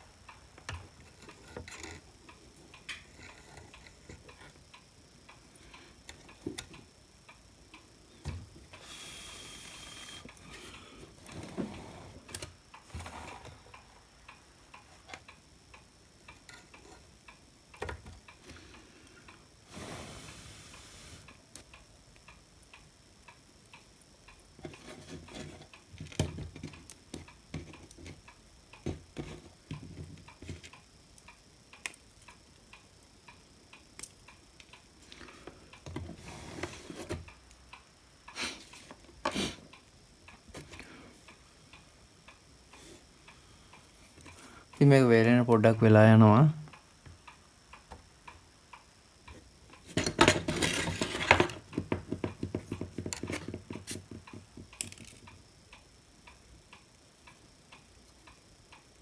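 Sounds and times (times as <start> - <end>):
short hissing bursts: 8.8 - 11.0, 19.6 - 21.4
clicks and taps of parts: 16.3 - 18.6, 24.6 - 37.9, 46.7 - 55.9.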